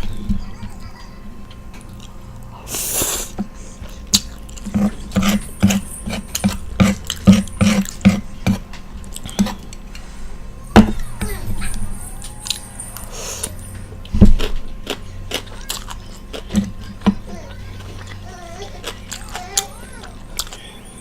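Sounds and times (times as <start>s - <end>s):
person chewing food: 1.4s - 10.1s, 11.6s - 21.0s
noisy bite or slurp: 2.6s - 3.4s.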